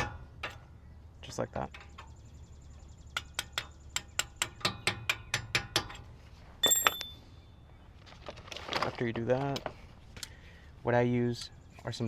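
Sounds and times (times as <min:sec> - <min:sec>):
ringing metal clank: 0:06.6 - 0:07.2.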